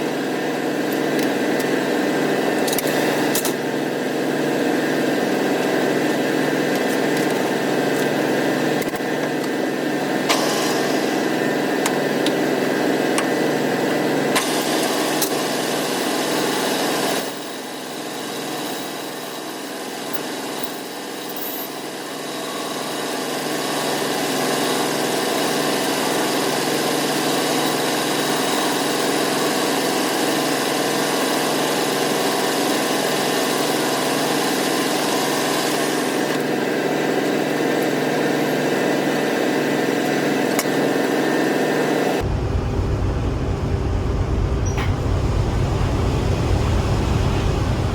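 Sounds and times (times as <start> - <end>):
metal lathe humming: 42.2 - 47.9.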